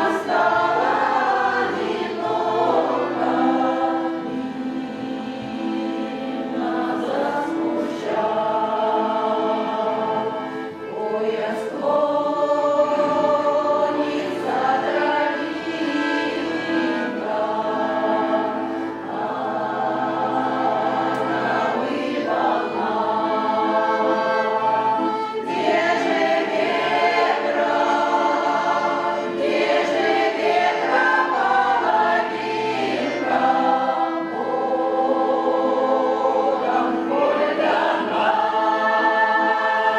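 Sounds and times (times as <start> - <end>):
choir singing folk song: 0.0 - 39.9.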